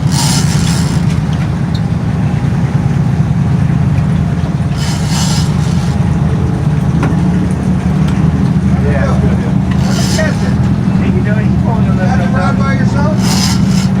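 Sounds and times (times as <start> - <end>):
engine droning: 0.0 - 14.0.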